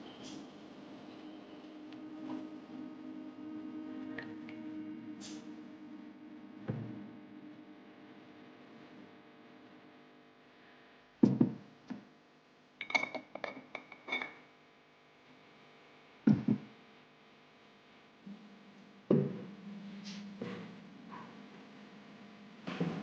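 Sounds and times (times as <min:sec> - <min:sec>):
faint background music: 0:00.0 - 0:11.8, 0:15.4 - 0:23.0
light ringing clinks: 0:12.8 - 0:14.4.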